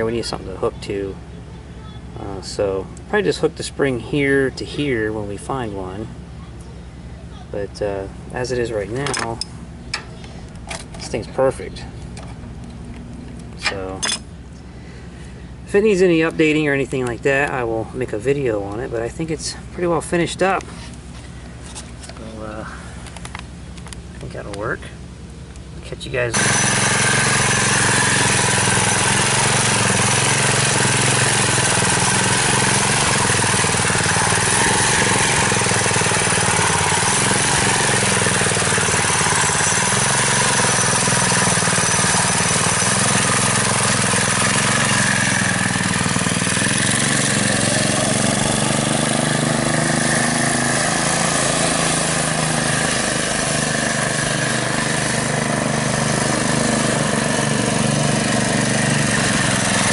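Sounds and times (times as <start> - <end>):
small engine running and revving: 26.3 - 59.9.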